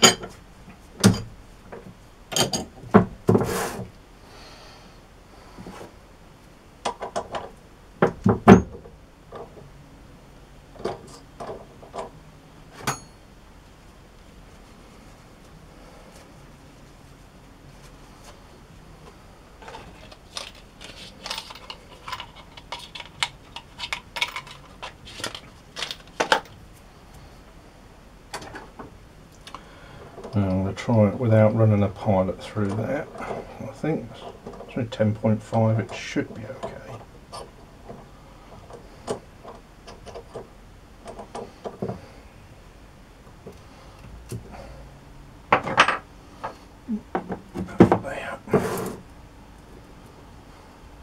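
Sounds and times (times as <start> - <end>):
metal tools clicking and clinking: 19.7 - 26.5.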